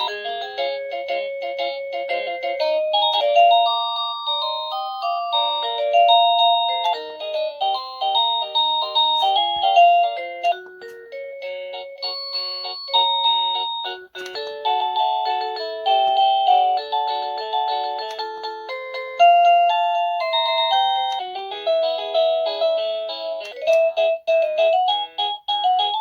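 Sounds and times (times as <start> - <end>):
doorbell chime melody: 0.0 - 26.0.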